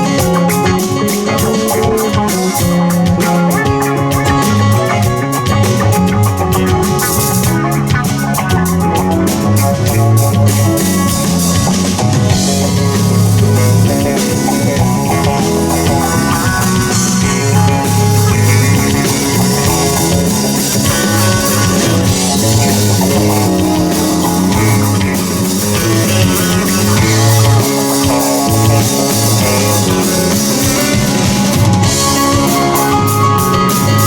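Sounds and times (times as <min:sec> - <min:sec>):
rock band playing instrumental: 0:00.0 - 0:34.0.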